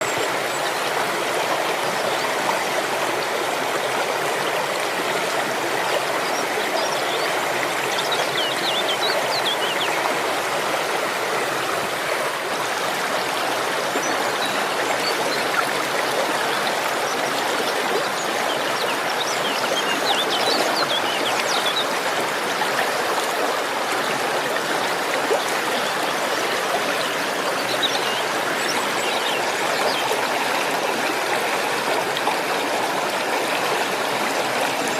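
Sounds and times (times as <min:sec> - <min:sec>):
waterfall rushing and splashing: 0:00.0 - 0:34.9.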